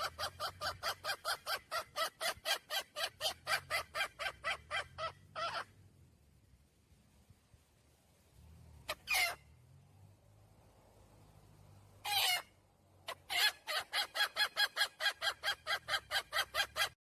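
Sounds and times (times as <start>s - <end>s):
hen clucking: 0.0s - 5.7s, 12.1s - 17.0s
hen squawking: 0.0s - 5.7s, 8.9s - 9.4s, 12.0s - 17.0s.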